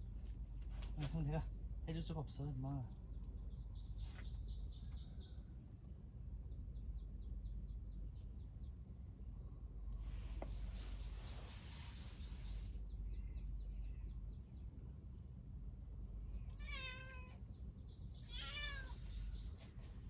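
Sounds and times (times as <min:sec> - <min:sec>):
cat meowing: 0:16.4 - 0:17.4, 0:18.2 - 0:19.4.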